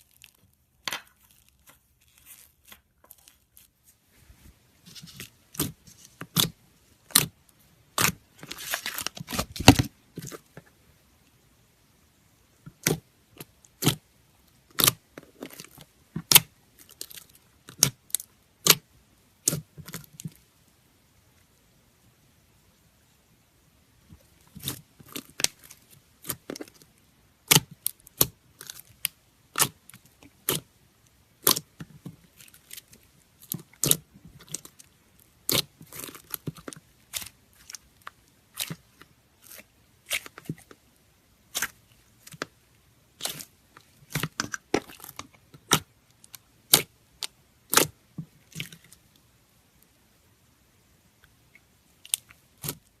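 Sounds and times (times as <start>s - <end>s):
slime squished by hand: 27.4s - 30.7s, 31.4s - 40.8s, 41.4s - 46.0s, 46.6s - 49.0s.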